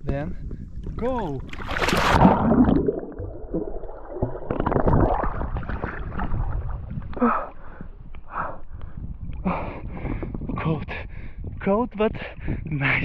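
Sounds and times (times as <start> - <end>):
water sloshing and splashing: 0.8 - 7.8.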